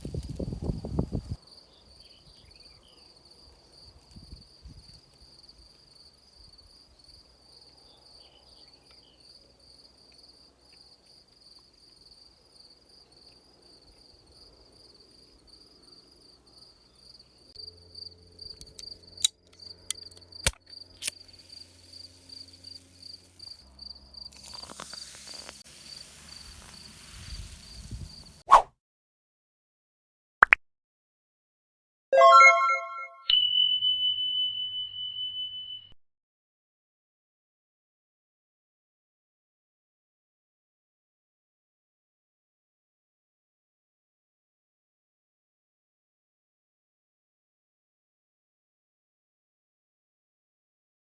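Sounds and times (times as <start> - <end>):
cricket trilling: 15.4 - 28.4
soft hiss: 24.3 - 28.4.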